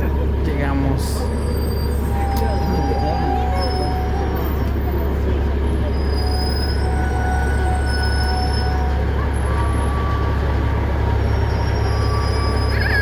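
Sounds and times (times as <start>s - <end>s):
vehicle engine humming: 0.0s - 13.0s
high squealing tones: 11.2s - 13.0s.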